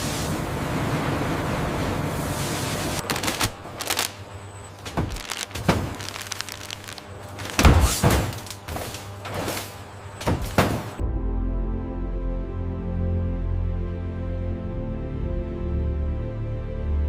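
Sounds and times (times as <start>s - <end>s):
knocks and thuds: 4.9s - 6.0s, 10.2s - 11.0s.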